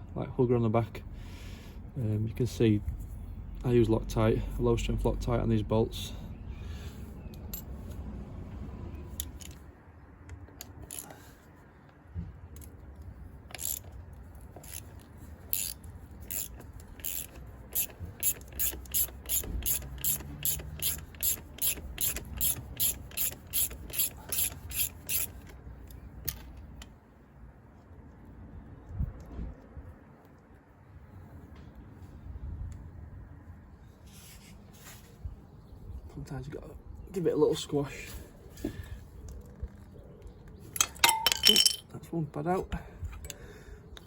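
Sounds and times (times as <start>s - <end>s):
ratchet wrench clicking: 10.6s - 11.1s, 13.5s - 14.0s, 14.6s - 25.6s.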